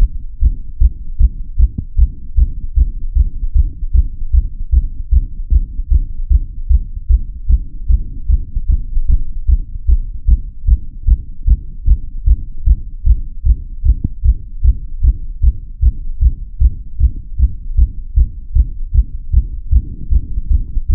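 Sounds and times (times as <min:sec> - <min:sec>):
heartbeat thuds: 0:00.0 - 0:20.9.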